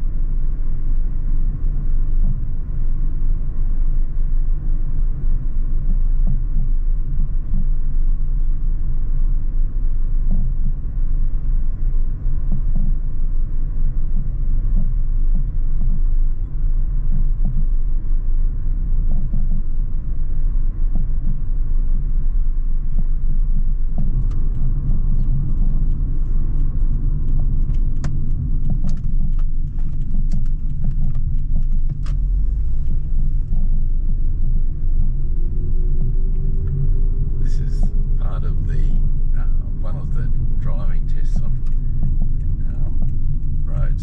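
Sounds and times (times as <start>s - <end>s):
road and engine rumble: 0.0s - 44.0s
light clicks and rattles: 23.6s - 44.0s.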